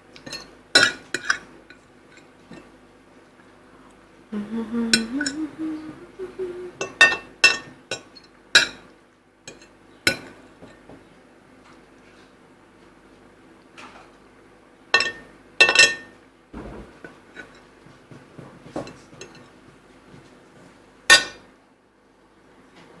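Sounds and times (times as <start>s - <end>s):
dishes and cutlery clinking: 0.2s - 2.7s, 15.0s - 17.7s, 21.1s - 21.5s.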